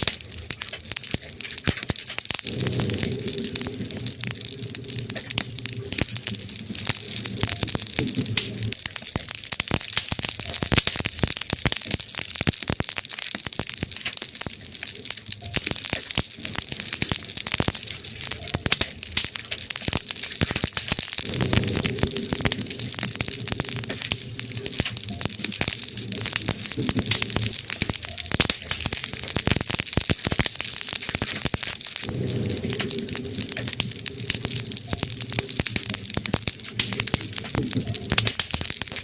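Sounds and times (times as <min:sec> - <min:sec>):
campfire crackling and popping: 0:00.0 - 0:39.0
low steady hum: 0:32.1 - 0:38.4.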